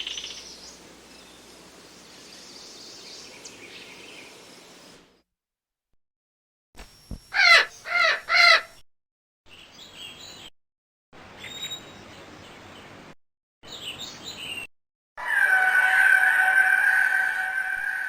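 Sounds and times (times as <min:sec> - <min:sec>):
birds chirping: 0:00.0 - 0:05.0, 0:07.3 - 0:08.7
steady held bird call: 0:07.3 - 0:08.7, 0:15.2 - 0:18.0
wavering bird calls: 0:07.3 - 0:08.8, 0:15.2 - 0:18.0.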